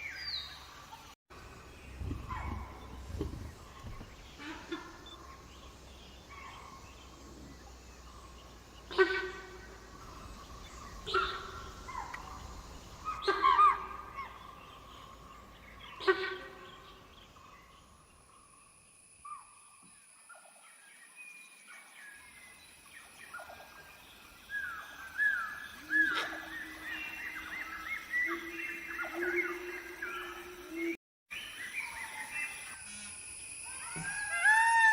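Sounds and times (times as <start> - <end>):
loud bird calls: 8.4 - 17.5.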